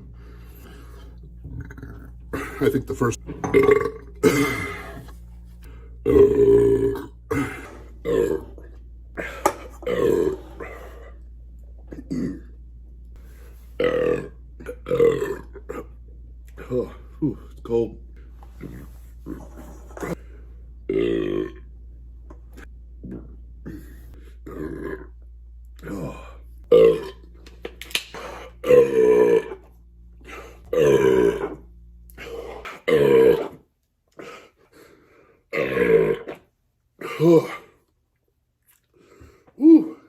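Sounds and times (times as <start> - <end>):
man belching: 1.4 - 5.0, 6.0 - 10.6, 11.9 - 12.6, 13.8 - 16.0, 20.9 - 21.7, 24.4 - 25.2, 25.8 - 27.3, 28.6 - 29.6, 30.7 - 31.6, 32.6 - 33.6, 35.5 - 36.4, 37.0 - 37.8.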